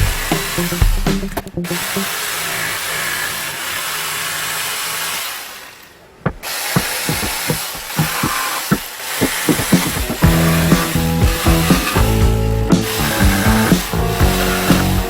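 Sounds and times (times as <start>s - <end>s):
power tool running: 0.0s - 15.0s
sharp knocks and clicks: 6.2s - 10.3s.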